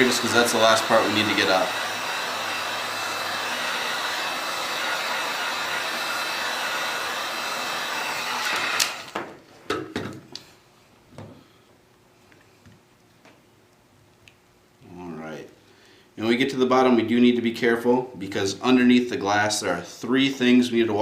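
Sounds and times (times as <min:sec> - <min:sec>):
heat gun blowing: 0:00.0 - 0:09.3.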